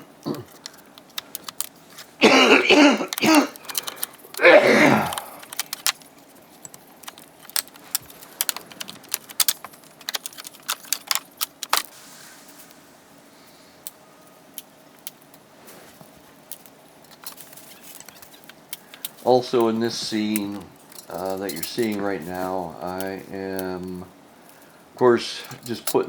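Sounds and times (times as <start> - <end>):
sharp small clicks and taps: 0.2 - 2.1, 5.1 - 11.9.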